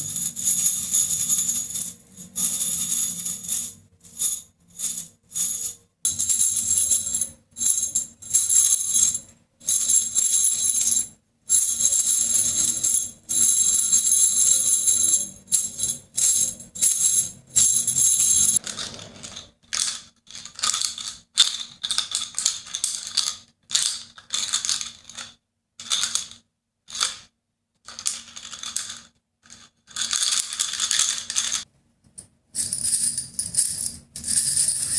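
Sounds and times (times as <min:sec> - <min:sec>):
bangles jingling: 0:00.0 - 0:18.6, 0:32.6 - 0:34.9.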